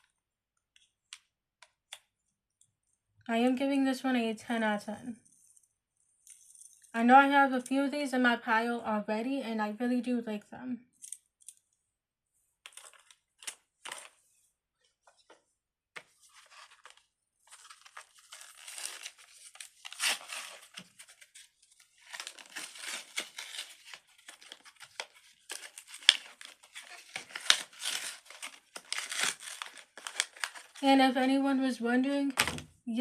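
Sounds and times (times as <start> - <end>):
plastic packaging crinkling and tearing: 16.2 - 30.9.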